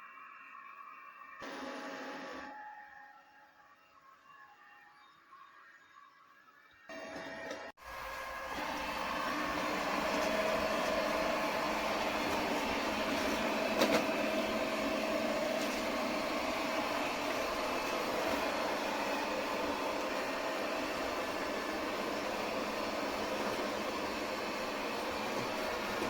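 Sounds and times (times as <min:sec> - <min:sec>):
robot vacuum running: 0:01.4 - 0:02.5, 0:06.9 - 0:26.0.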